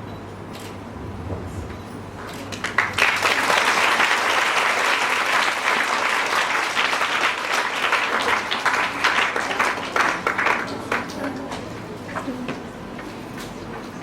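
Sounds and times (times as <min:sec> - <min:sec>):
audience applauding: 0:02.6 - 0:11.0.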